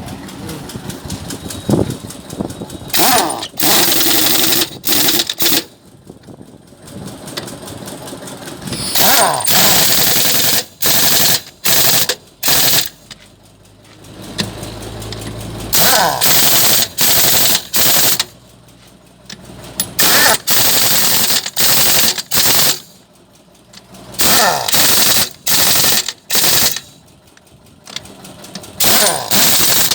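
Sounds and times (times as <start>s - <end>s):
air impact wrench hammering: 2.9s - 5.7s, 8.6s - 13.2s, 15.1s - 18.4s, 19.8s - 23.0s, 24.2s - 27.0s, 28.8s - 29.9s.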